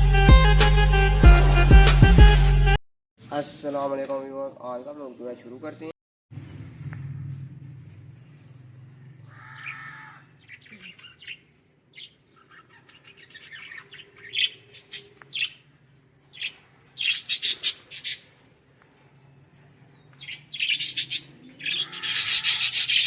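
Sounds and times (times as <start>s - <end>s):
parrots chirping and squawking: 7.8s - 23.0s.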